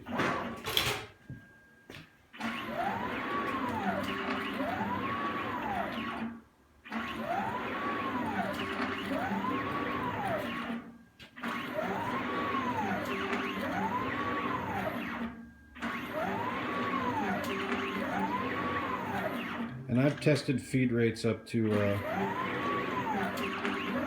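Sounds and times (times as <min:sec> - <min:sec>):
stepper motors whining: 0:02.4 - 0:06.3, 0:06.9 - 0:10.8, 0:11.4 - 0:20.2, 0:21.7 - 0:24.0.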